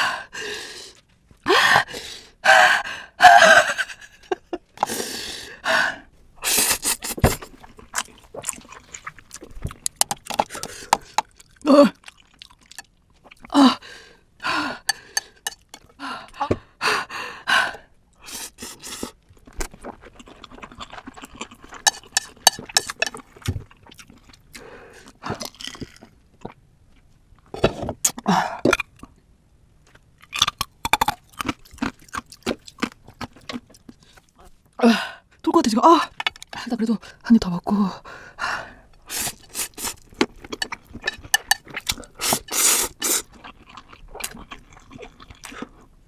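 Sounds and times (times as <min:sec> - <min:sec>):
wet chewing and slurping: 0:06.4 - 0:13.6, 0:14.6 - 0:16.0, 0:18.3 - 0:26.6, 0:29.9 - 0:34.6, 0:38.9 - 0:46.0
sharp gasping breaths: 0:13.6 - 0:18.8.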